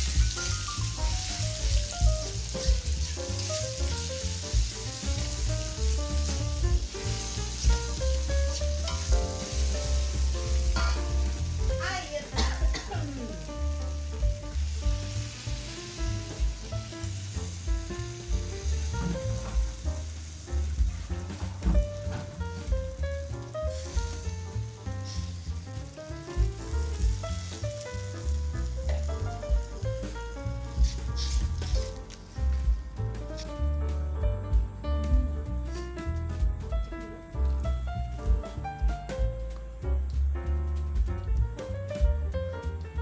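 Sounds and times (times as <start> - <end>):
sambal sizzling in a pan: 0.0 - 34.0
background music: 0.0 - 43.0.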